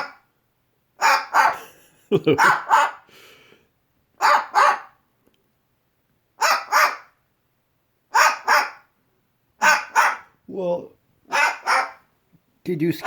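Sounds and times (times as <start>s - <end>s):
cockatoo mimicking dog bark: 0.0s - 0.2s, 1.0s - 1.7s, 2.3s - 3.1s, 4.2s - 5.0s, 6.4s - 7.2s, 8.1s - 8.9s, 9.6s - 10.4s, 11.2s - 12.1s.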